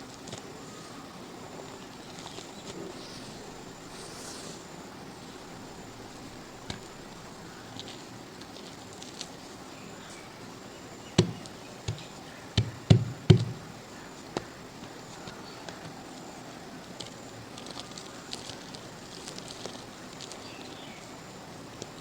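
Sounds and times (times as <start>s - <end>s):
dried mud cracking: 0.0s - 22.0s.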